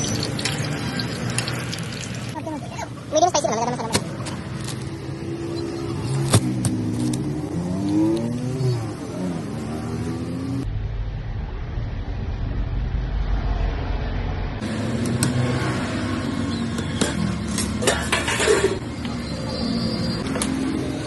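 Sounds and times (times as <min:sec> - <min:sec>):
street traffic rumble: 0:00.0 - 0:21.0
utensils clinking on metal: 0:17.6 - 0:18.8.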